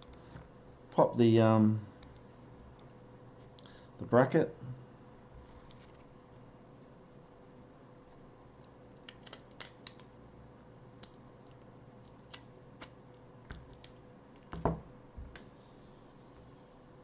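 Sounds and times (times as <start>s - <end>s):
faint steady hum: 0.0s - 17.0s
small tools clicking on phone parts: 9.0s - 10.1s.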